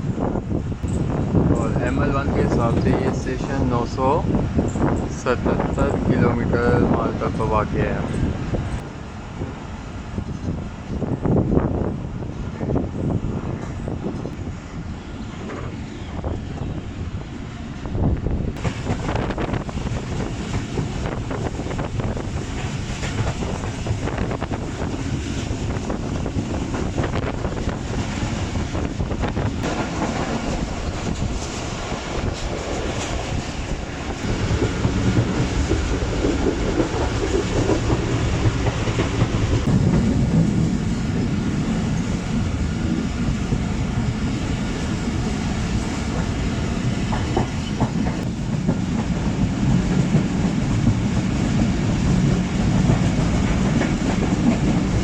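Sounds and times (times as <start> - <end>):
train wheels clicking on rails: 18.6 - 42.0, 42.8 - 55.0.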